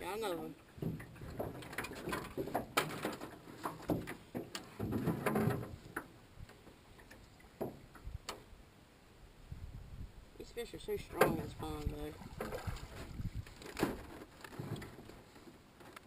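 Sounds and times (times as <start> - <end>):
fishing tackle clicks and knocks: 0.8 - 8.4.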